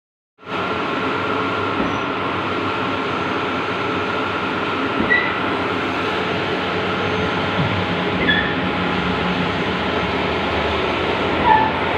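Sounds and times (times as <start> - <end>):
printer whirring and rumbling: 0.6 - 11.9.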